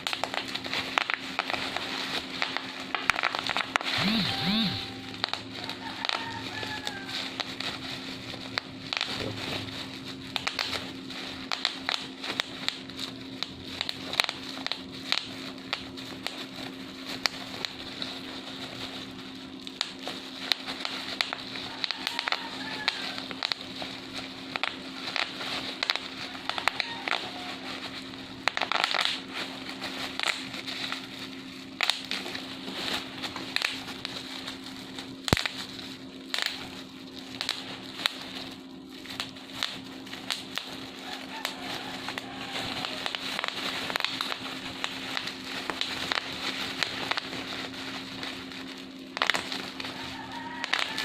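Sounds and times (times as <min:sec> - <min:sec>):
bubble wrap popping: 0:00.0 - 0:51.0
low hum: 0:03.9 - 0:05.6.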